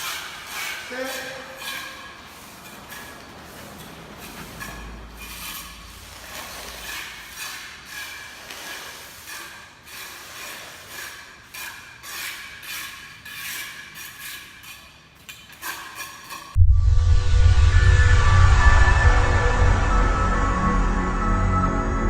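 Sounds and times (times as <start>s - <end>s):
scraping and clattering concrete work: 0.0s - 16.6s
loud music: 16.8s - 22.0s.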